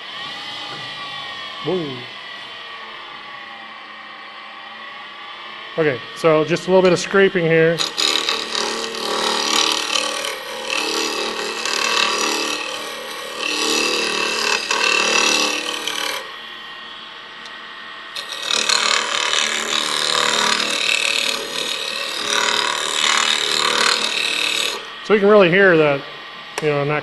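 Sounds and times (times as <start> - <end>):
lathe humming: 0.0 - 27.0
gouge scraping spinning wood: 6.2 - 16.4, 18.2 - 25.0.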